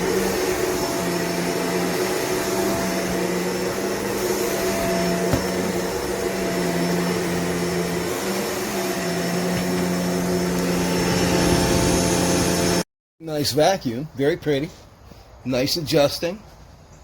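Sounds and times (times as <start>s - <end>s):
vacuum cleaner running: 0.0s - 12.8s.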